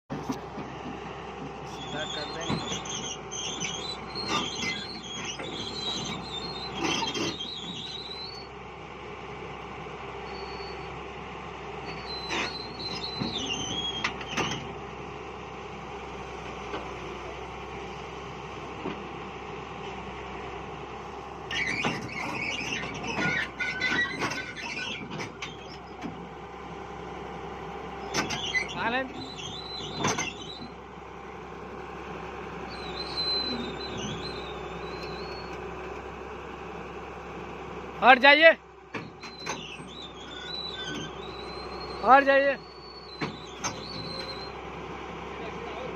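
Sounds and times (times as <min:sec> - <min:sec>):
diesel excavator engine running: 0:00.1 - 0:45.9
high metallic squealing: 0:01.7 - 0:08.5, 0:11.8 - 0:14.7, 0:21.5 - 0:25.9, 0:28.0 - 0:30.8, 0:32.7 - 0:35.6, 0:39.2 - 0:44.6.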